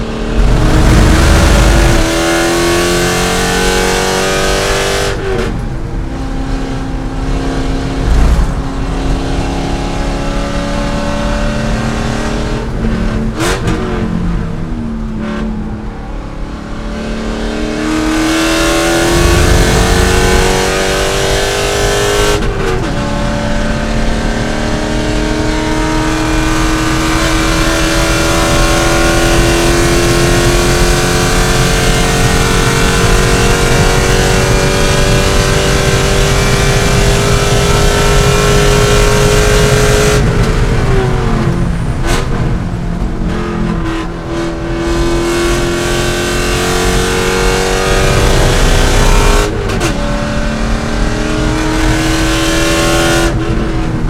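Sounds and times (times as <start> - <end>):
race car engine accelerating: 0.0 - 54.0.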